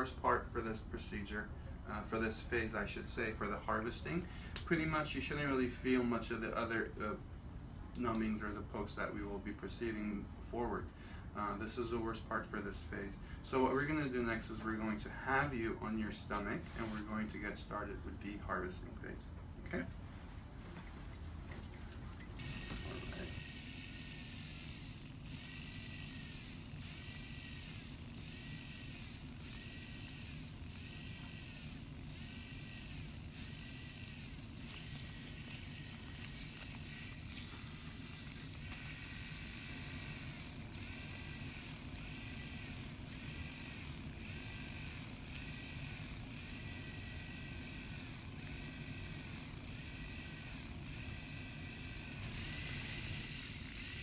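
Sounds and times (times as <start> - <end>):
motorized punch bursts: 22.4 - 54.0.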